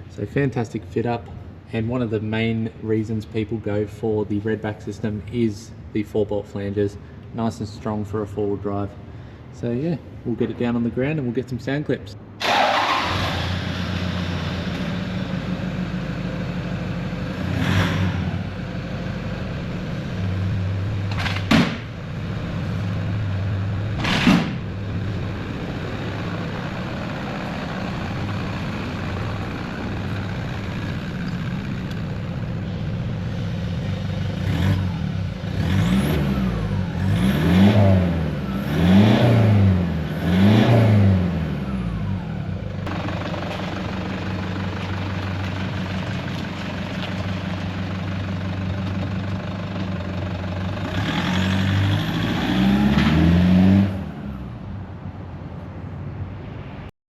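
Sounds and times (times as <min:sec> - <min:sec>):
diesel engine idling and revving: 0:12.1 - 0:56.9.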